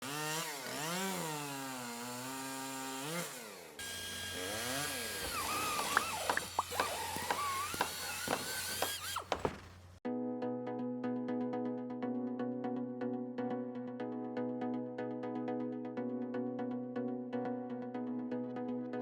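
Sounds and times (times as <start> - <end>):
chainsaw engine revving: 0.0 - 9.9.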